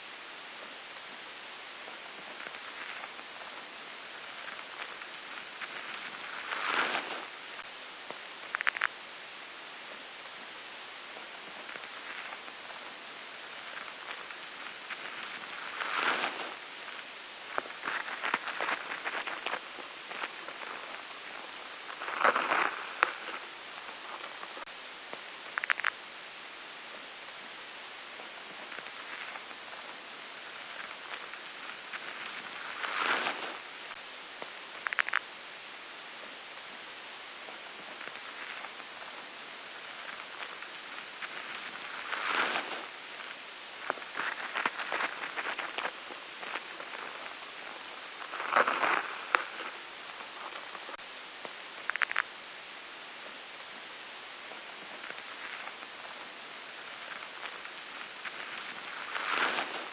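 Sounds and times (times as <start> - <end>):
rustling: 0.0 - 59.9
steady hiss: 0.0 - 59.9
ladybug rustling and clicking: 8.1 - 9.0, 13.5 - 26.0, 34.4 - 35.3, 39.8 - 52.3.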